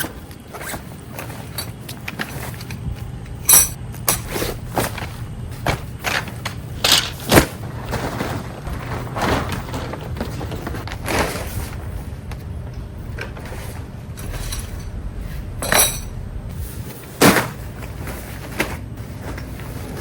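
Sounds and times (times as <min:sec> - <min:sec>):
low steady hum: 0:00.0 - 0:20.0
hard objects clinking: 0:01.6 - 0:07.5, 0:13.2 - 0:16.2
ringing clink: 0:03.5 - 0:04.3.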